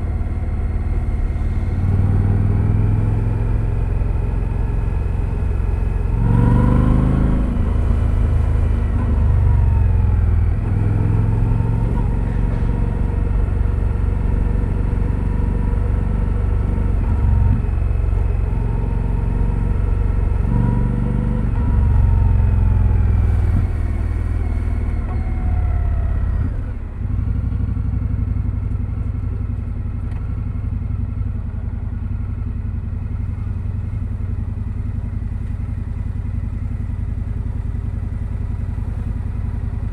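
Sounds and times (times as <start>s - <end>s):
motorcycle engine revving: 0.0s - 29.5s.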